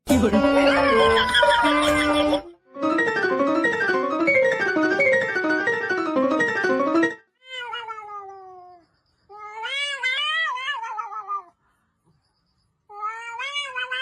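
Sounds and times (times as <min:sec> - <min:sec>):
cat meowing: 0:07.4 - 0:11.6, 0:12.9 - 0:14.0.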